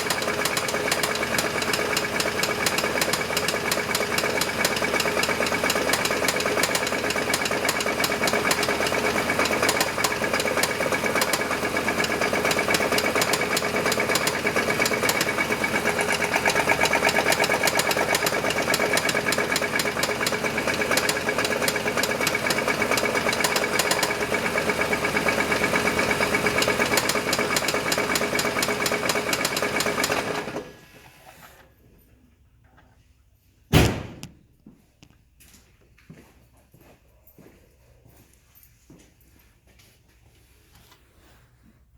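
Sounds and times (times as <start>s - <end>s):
engine knocking: 0.0s - 30.7s
loud thump: 33.7s - 34.5s.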